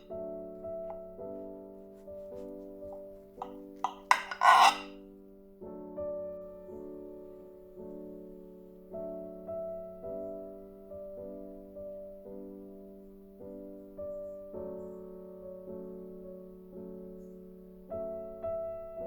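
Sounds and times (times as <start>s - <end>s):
slow piano music: 0.0s - 4.1s, 4.9s - 19.0s
scraping rasp: 3.4s - 4.9s.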